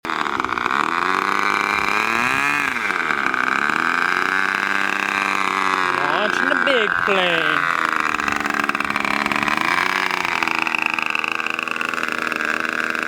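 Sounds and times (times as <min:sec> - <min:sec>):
model airplane engine revving: 0:08.1 - 0:13.0.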